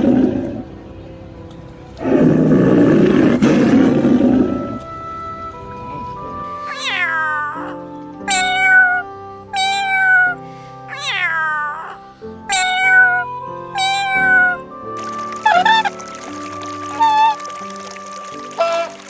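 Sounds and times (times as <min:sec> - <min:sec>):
background music with held notes: 0:00.0 - 0:19.0
cat meowing: 0:06.6 - 0:14.7, 0:15.4 - 0:16.0, 0:16.9 - 0:17.4, 0:18.6 - 0:19.0.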